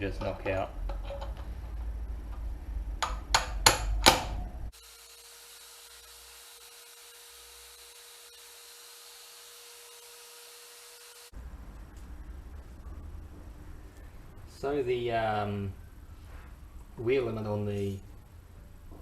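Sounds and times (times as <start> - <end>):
light hum: 0.0 - 3.6, 11.3 - 19.0
faint steady hiss: 11.3 - 19.0.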